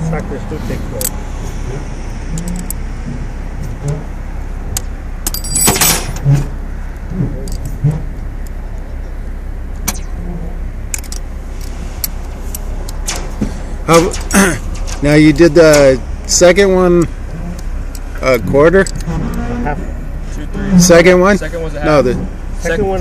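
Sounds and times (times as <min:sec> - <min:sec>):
steady low rumble: 0:00.0 - 0:23.0
metal tools clinking and rattling: 0:05.2 - 0:06.4, 0:10.9 - 0:11.8
sharp clicks: 0:10.9 - 0:16.0.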